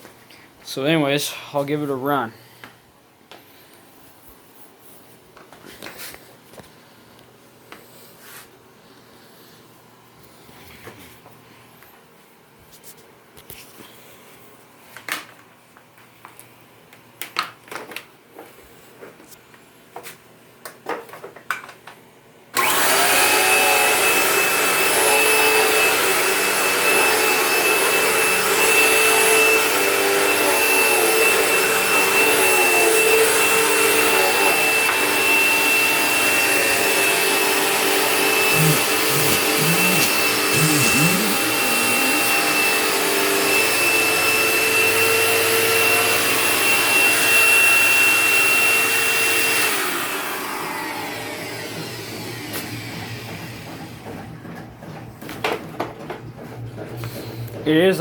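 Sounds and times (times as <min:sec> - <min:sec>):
vacuum cleaner running: 0:22.6 - 0:55.0.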